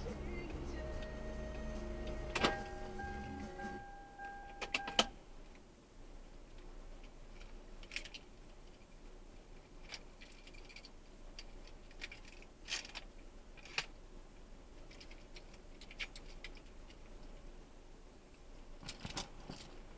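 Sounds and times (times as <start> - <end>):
low hum: 0.0 - 5.3.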